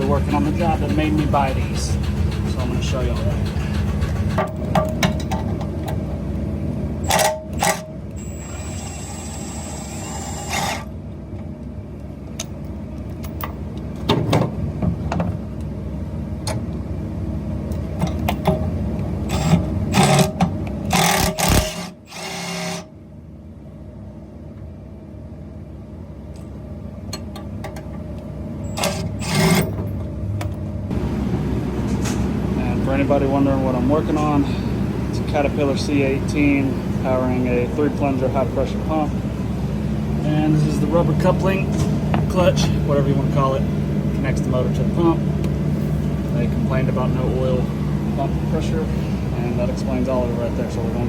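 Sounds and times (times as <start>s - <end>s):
steady low hum: 0.0s - 51.0s
impact wrench bursts: 7.0s - 10.9s, 19.3s - 22.9s, 28.7s - 29.7s.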